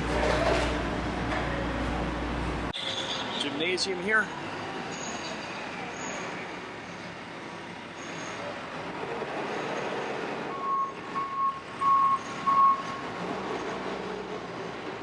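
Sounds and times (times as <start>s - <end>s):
reversing alarm beeps: 10.5s - 13.2s.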